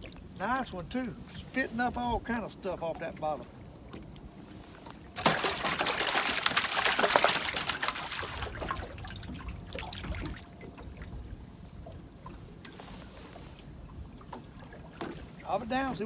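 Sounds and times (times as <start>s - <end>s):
water splashing and trickling: 0.0s - 16.0s.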